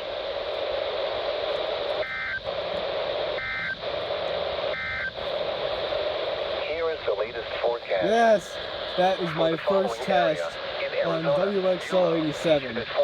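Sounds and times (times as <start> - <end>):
radio hiss: 0.0 - 13.0
digital data bursts: 7.9 - 13.0.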